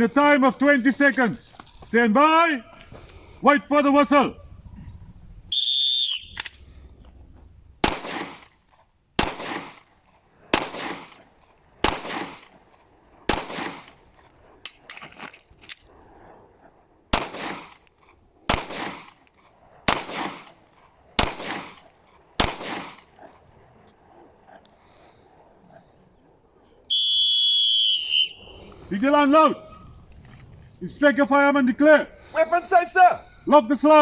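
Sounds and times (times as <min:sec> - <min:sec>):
faint magazine clicks: 0:06.3 - 0:06.7
handgun shots: 0:07.8 - 0:08.5, 0:09.2 - 0:09.8, 0:19.9 - 0:20.5, 0:21.2 - 0:23.1.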